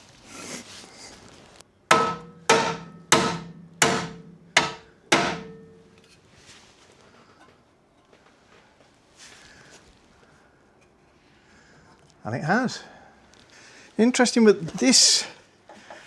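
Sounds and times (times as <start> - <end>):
hammer blows on metal: 1.9 - 5.9.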